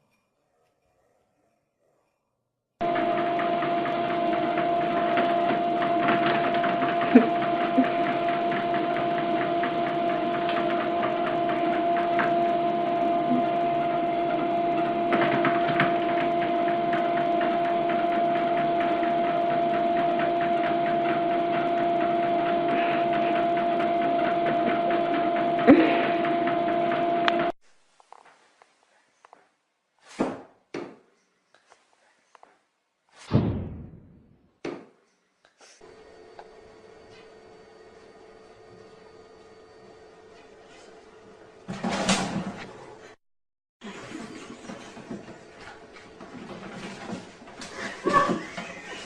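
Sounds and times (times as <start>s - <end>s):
steady pitched hum: 2.8s - 27.6s.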